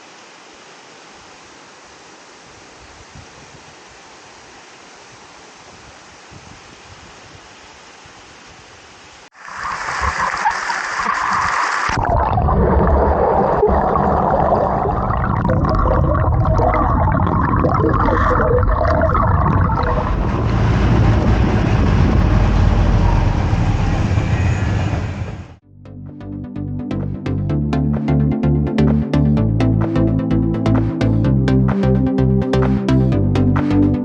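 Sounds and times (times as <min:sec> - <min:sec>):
rushing river water: 0:00.0 - 0:22.8
wind rumble on microphone: 0:02.5 - 0:03.9, 0:05.1 - 0:08.8, 0:14.9 - 0:25.6.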